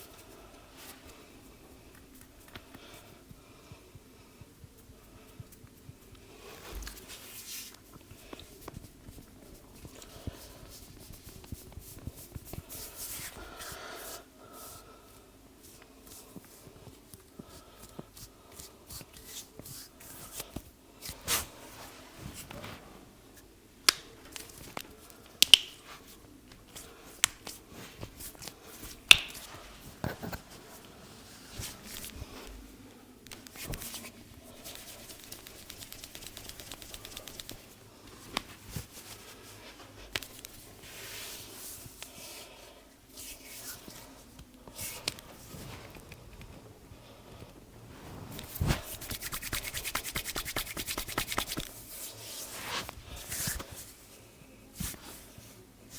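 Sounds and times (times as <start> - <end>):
hands rubbing and patting hair: 4.4 - 14.8, 17.8 - 42.5, 47.7 - 54.0
sharp finger snaps: 25.4 - 25.8, 29.1 - 29.5.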